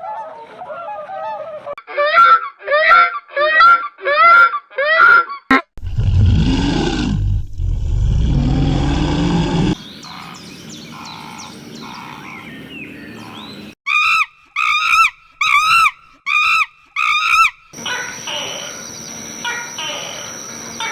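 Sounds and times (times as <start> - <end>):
faint chirps: 17.8 - 20.9.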